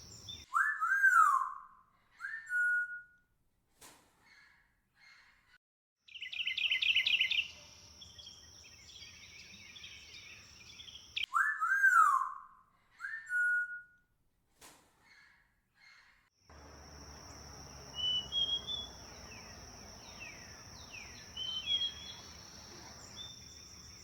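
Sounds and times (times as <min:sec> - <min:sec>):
bird chirping: 0:00.0 - 0:01.4, 0:06.1 - 0:12.2, 0:16.5 - 0:24.0
bird whistling: 0:17.9 - 0:24.0.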